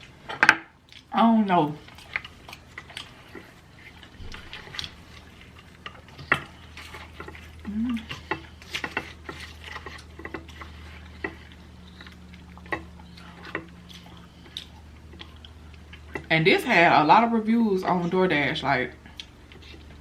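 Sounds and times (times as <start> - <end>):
person humming: 7.6 - 8.1.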